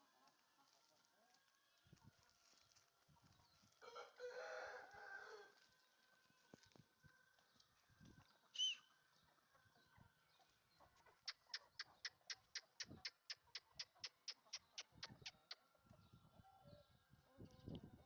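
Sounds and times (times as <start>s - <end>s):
rooster crowing: 3.8s - 5.6s
high short bird call: 8.6s - 8.9s.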